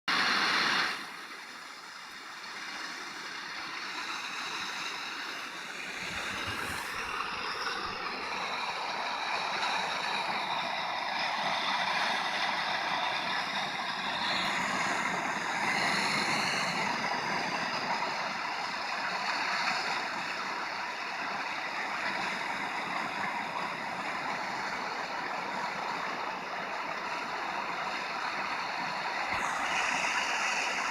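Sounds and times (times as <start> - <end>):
radio static rushing noise: 0.1 - 10.5, 29.1 - 30.9.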